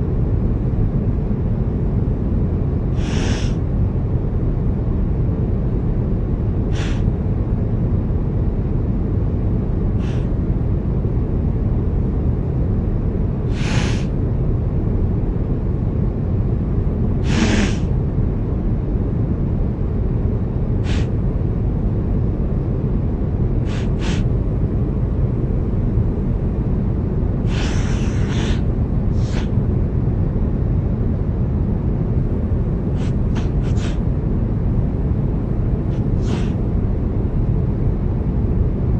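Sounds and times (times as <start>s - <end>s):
aircraft cabin drone: 0.0s - 38.9s
man sniffling: 3.0s - 3.6s, 27.5s - 28.6s.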